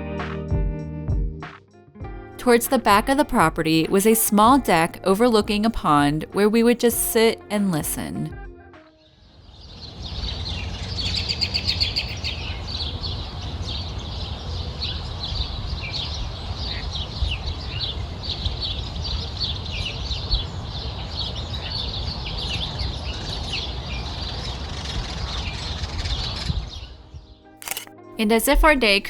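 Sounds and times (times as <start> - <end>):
bird trill: 10.3 - 12.6
birds chirping and calling: 10.5 - 12.6.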